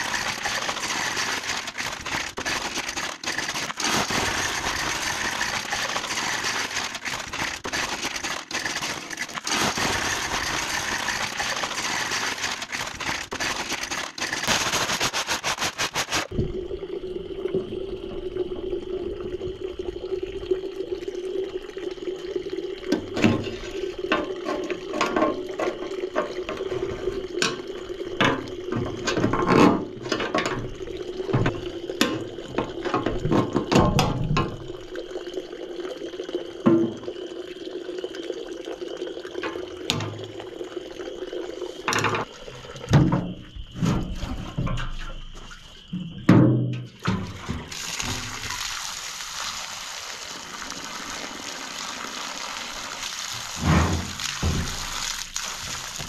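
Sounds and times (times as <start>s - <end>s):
water running: 0.0s - 43.8s, 47.1s - 56.0s
knocks and clunks: 42.9s - 47.7s, 53.6s - 54.8s.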